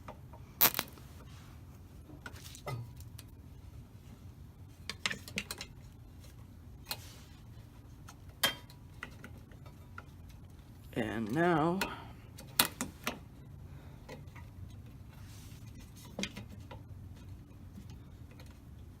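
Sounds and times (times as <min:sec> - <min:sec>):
plastic zip ties clicking: 0:00.6 - 0:01.0.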